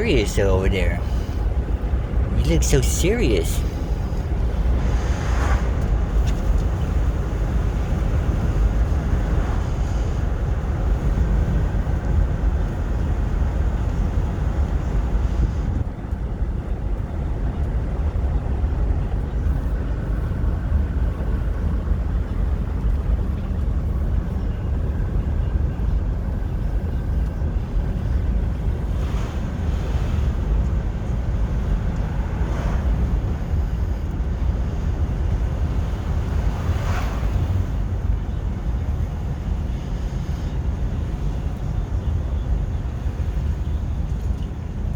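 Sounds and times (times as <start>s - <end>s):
road and wind rumble in car: 0.0s - 44.9s.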